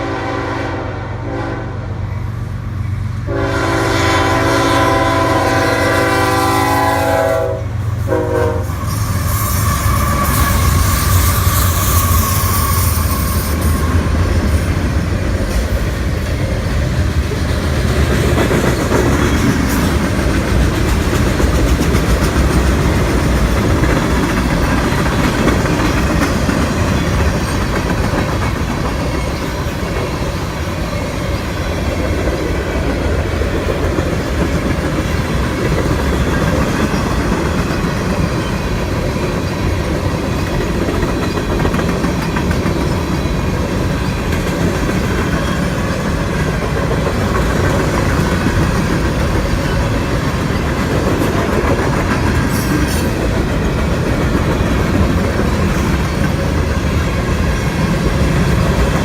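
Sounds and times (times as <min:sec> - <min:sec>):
train horn blast: 0:00.0 - 0:02.0, 0:03.3 - 0:14.0
train passing rumbling: 0:00.0 - 0:59.0
wheels clacking over rail joints: 0:09.6 - 0:59.0.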